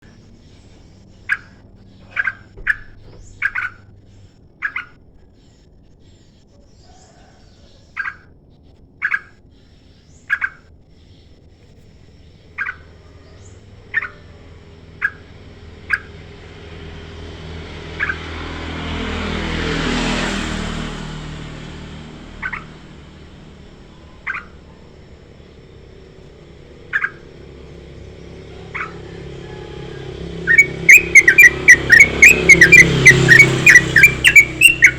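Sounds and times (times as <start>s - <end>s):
passing vehicle: 0.0s - 7.5s, 12.2s - 34.9s
bird giving sharp calls: 1.2s - 4.0s, 4.6s - 5.0s, 9.0s - 9.4s, 10.1s - 10.7s, 12.5s - 20.0s, 21.1s - 34.9s.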